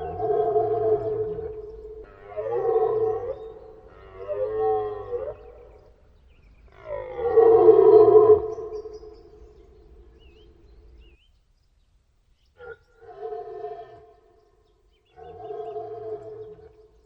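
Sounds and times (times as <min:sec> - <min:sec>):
deer stag roaring: 0:00.0 - 0:05.8, 0:06.8 - 0:08.8.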